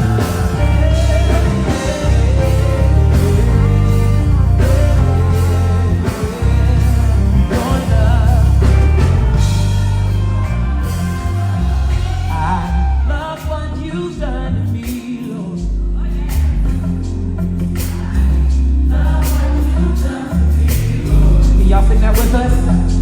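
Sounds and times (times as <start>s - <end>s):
person singing with vibrato: 0.0s - 17.1s
bass guitar low notes: 0.0s - 23.0s
drums: 0.0s - 23.0s.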